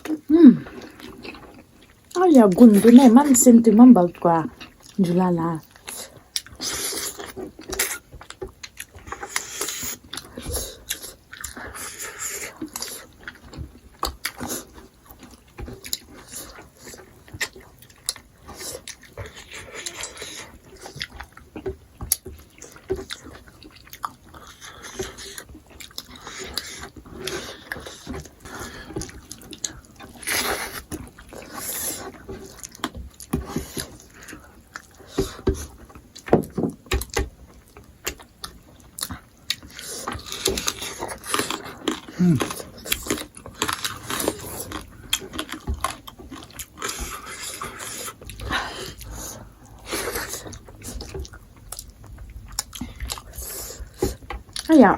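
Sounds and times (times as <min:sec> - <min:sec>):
people chewing: 0:00.0 - 0:54.9.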